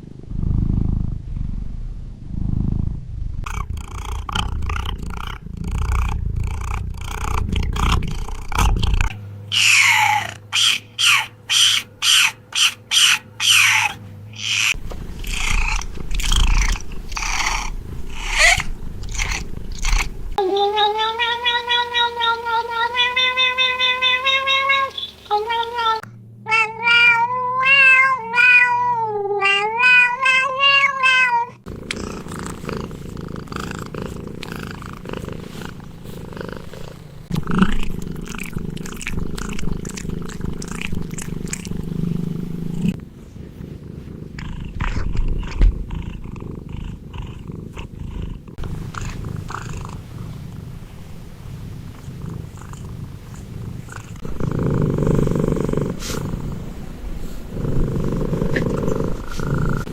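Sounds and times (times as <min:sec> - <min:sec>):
cat purring: 0:00.0 - 0:29.6, 0:31.6 - 0:59.9
cat meowing: 0:08.7 - 0:31.7.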